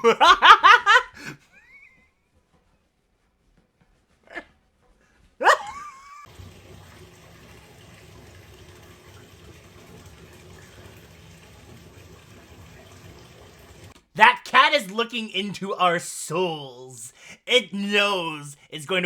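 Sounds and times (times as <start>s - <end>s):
water running from a tap: 6.2s - 16.4s.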